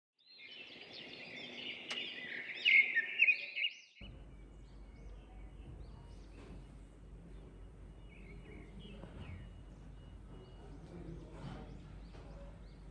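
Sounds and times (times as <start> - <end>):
songbirds chirping and singing: 0.2 - 12.9
low rumble: 4.0 - 10.1.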